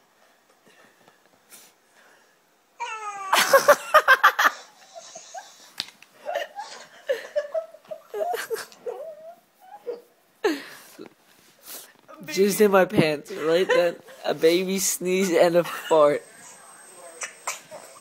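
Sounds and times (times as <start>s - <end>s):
person laughing: 3.3s - 5.6s, 6.2s - 9.0s.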